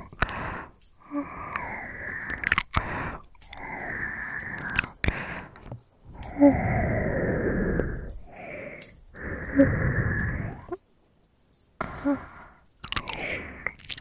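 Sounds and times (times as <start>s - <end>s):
heavy breathing: 0.0s - 10.8s, 11.8s - 14.0s
wet mouth clicks: 0.0s - 10.8s, 11.8s - 14.0s.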